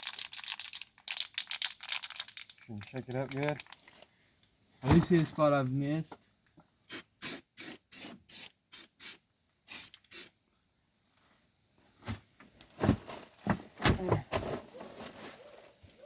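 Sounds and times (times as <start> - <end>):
aerosol can spraying: 6.9 - 10.3.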